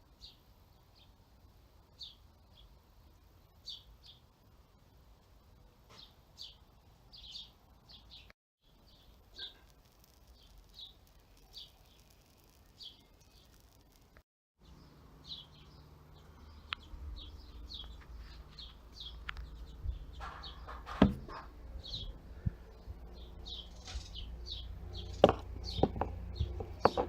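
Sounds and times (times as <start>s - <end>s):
small bird chirping: 1.9s - 2.8s, 3.4s - 4.3s, 5.9s - 27.0s
knocks: 20.2s - 21.5s
loud thud: 20.2s - 21.5s.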